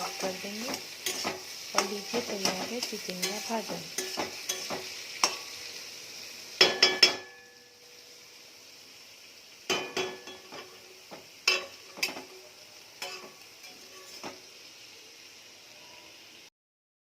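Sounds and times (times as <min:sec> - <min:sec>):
metal utensil scraping a pan: 0:00.0 - 0:05.8, 0:09.7 - 0:14.5
faint hiss from pan: 0:00.0 - 0:16.5.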